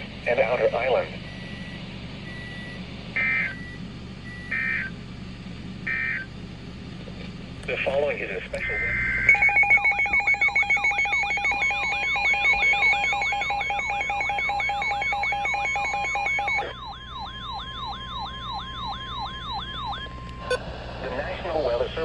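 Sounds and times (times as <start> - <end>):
falling siren sweeps: 8.6 - 20.6
alternating two-tone beeping: 8.6 - 20.7
long steady alarm tone: 8.6 - 20.7.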